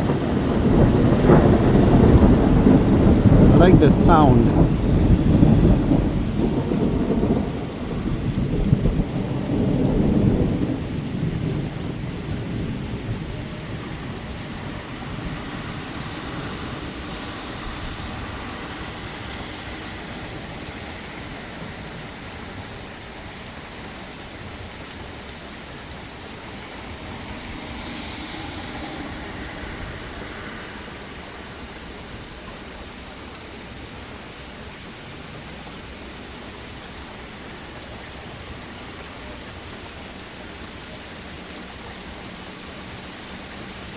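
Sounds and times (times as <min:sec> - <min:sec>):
thunder rumbling: 0:00.0 - 0:22.8, 0:25.8 - 0:32.4
heavy rain pouring: 0:00.0 - 0:43.9.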